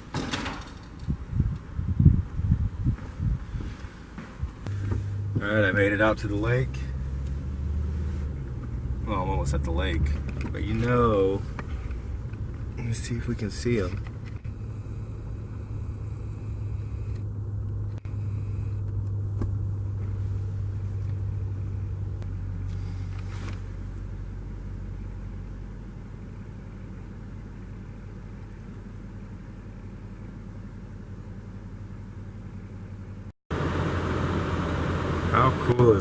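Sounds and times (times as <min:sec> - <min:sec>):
car engine and road rumble: 0:00.0 - 0:36.0.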